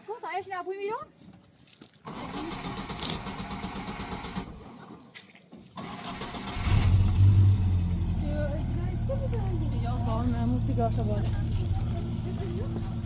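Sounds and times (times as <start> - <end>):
car starter cranking: 2.0 - 4.8, 5.8 - 8.2
car engine running: 6.1 - 13.0.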